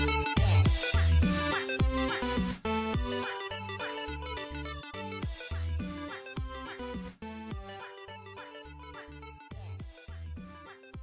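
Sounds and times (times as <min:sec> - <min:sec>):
electronic music with bass drops: 0:00.0 - 0:07.7.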